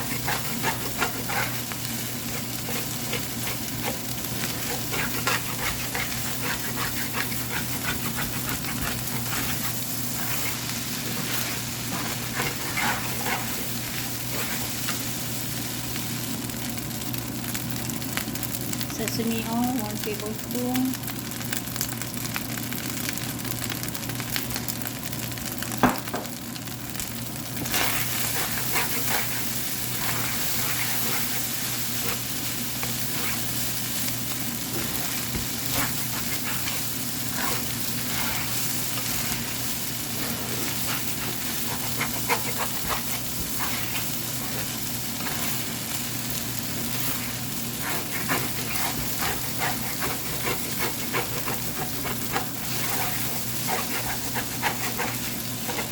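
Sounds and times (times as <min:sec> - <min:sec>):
spatula scraping a pan: 0:00.0 - 0:15.0, 0:27.6 - 0:55.9
rice sizzling in a pan: 0:00.0 - 0:55.9.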